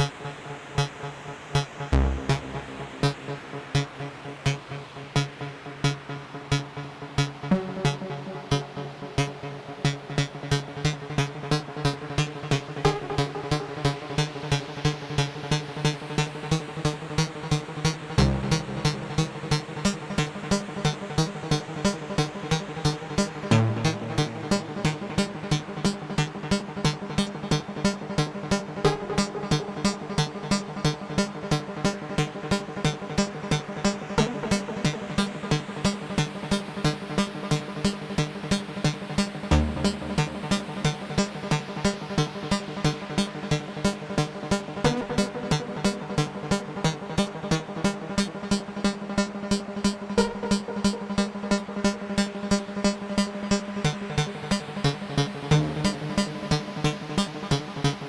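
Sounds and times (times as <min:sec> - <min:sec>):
low synth notes: 0:02.0 - 0:03.7, 0:18.2 - 0:20.1, 0:23.5 - 0:25.5, 0:39.5 - 0:40.9.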